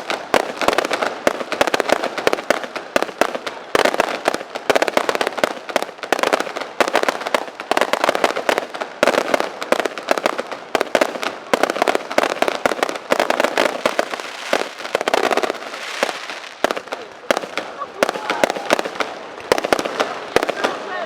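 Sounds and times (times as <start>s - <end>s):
fireworks bangs and crackles: 0.0s - 21.0s
hissing crackle: 0.0s - 21.0s.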